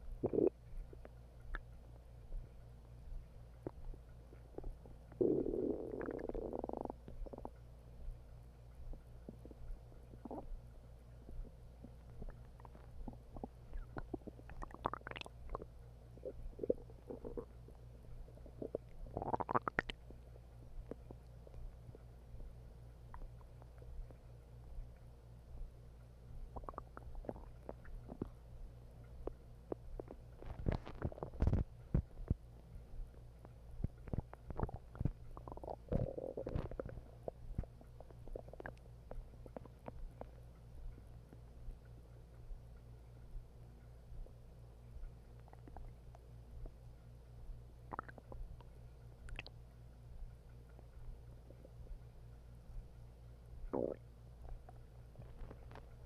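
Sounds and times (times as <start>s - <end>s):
stomach growling: 0.0s - 1.7s, 3.6s - 7.6s, 8.9s - 22.0s, 23.1s - 24.2s, 26.4s - 28.4s, 29.2s - 32.4s, 33.8s - 40.4s, 45.4s - 46.8s, 47.8s - 49.6s, 53.6s - 56.0s.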